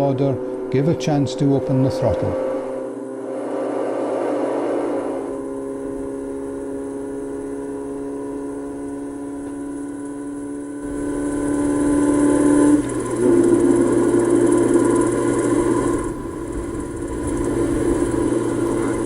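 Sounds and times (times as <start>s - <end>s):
car engine running: 0.0s - 19.0s.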